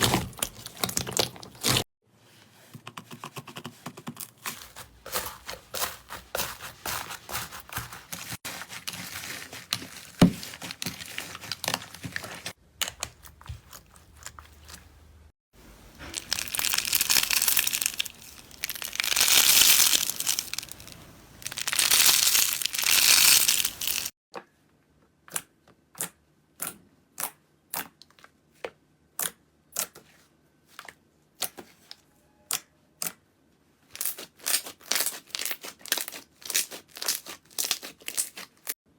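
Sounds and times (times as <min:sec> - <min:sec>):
loud squishing crunches: 0:00.0 - 0:01.9, 0:16.0 - 0:24.1
slime squeezed by hand crackling: 0:16.1 - 0:24.1.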